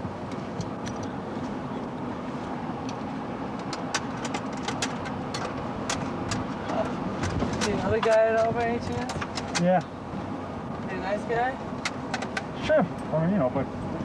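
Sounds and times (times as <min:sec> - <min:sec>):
car engine running: 0:00.0 - 0:14.0
sharp clicks and ticks: 0:03.6 - 0:06.5.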